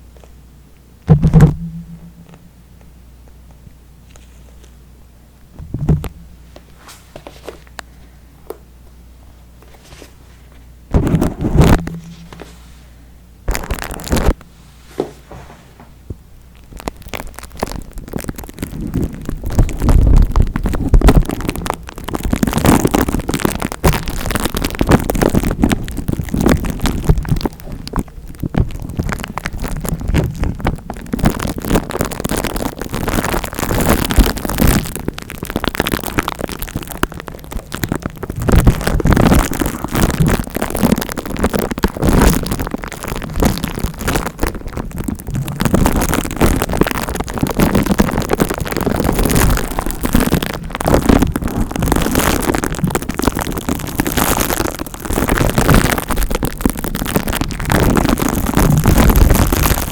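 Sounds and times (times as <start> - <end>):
scratching on microphone: 9.7 - 12.9, 13.5 - 15.8.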